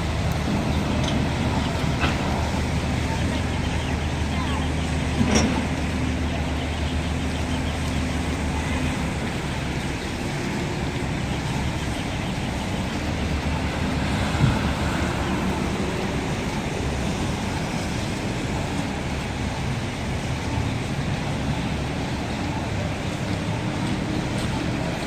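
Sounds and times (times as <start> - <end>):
vehicles passing: 0.0 - 25.0.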